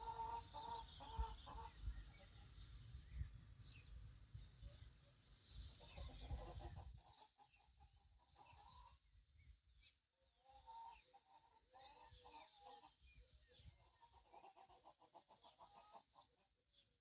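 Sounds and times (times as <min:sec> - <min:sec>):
chickens clucking: 0:00.0 - 0:02.7, 0:05.6 - 0:09.1, 0:10.2 - 0:16.7
small birds chirping: 0:00.0 - 0:17.0.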